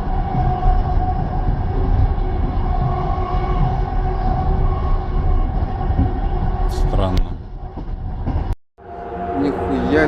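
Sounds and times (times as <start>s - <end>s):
train rumbling inside carriage: 0.0s - 10.0s
trumpet-like droning tone: 8.8s - 10.0s.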